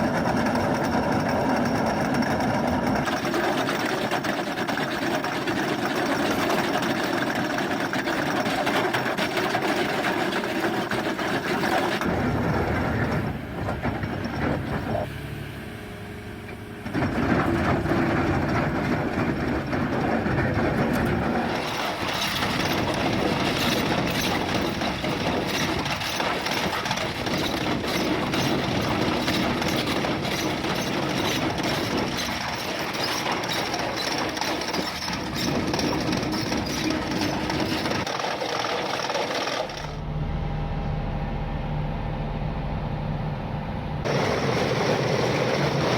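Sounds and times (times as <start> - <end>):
chain cutter rattling through rock: 0.0 - 12.1, 17.9 - 40.0
excavator engine: 0.0 - 45.9.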